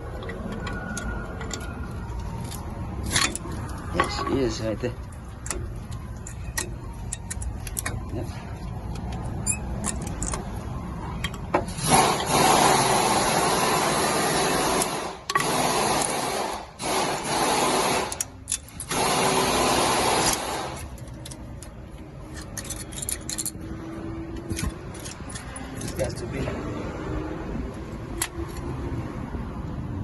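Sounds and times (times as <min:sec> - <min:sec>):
air wrench bursts: 0:11.6 - 0:21.0.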